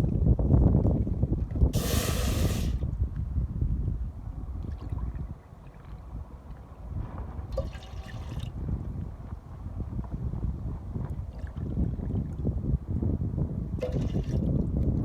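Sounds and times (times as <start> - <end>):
wind buffeting microphone: 0.0 - 15.0
loud hiss: 1.8 - 2.8.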